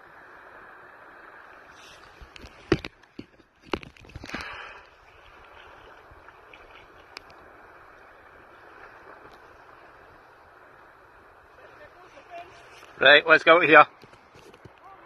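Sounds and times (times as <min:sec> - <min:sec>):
wind and water hiss: 0:00.0 - 0:15.0
water splash: 0:01.6 - 0:10.2.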